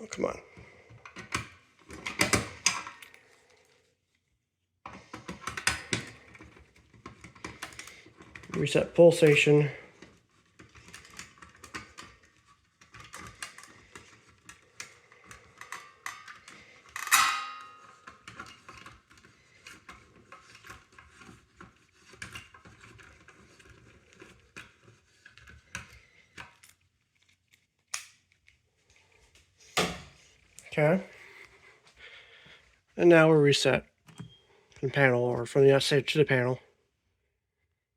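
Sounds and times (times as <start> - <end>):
metal parts clicking and rattling: 5.0 - 28.6.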